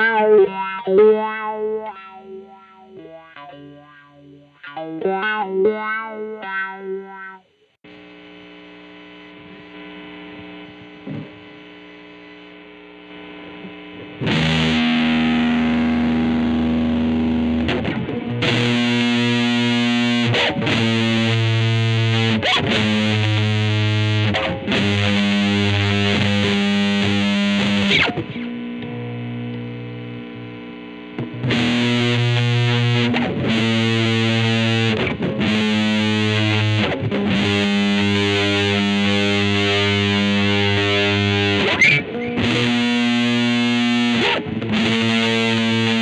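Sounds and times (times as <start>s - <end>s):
distorted electric guitar chords: 0.0s - 46.0s.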